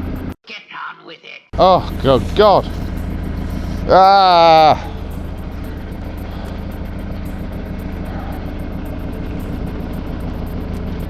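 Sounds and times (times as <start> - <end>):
diesel engine idling: 0.0 - 0.4, 1.5 - 11.0
exhaust rattling: 0.0 - 0.4, 1.6 - 11.0.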